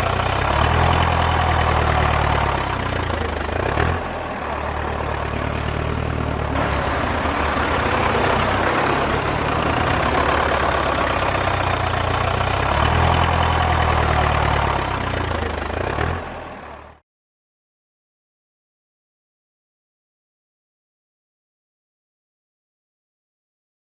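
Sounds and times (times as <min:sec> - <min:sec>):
diesel tractor engine running: 0:00.0 - 0:17.0.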